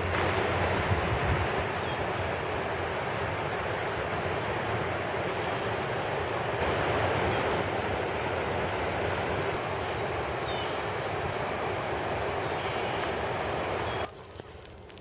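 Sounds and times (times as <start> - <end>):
wind noise on microphone: 0.0 - 1.7
surf washing on shore: 0.0 - 14.1.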